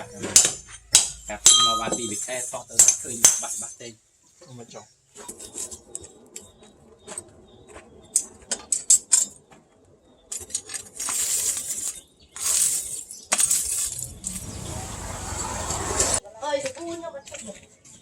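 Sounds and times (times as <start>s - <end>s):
harsh scraping on metal: 11.4s - 16.2s.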